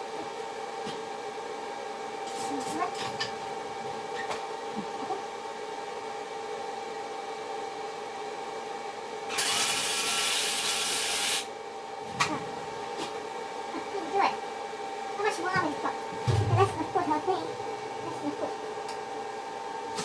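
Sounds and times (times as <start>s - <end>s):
steady background hum: 0.0s - 9.4s, 11.3s - 20.0s
welder arc hissing and crackling: 9.3s - 11.5s.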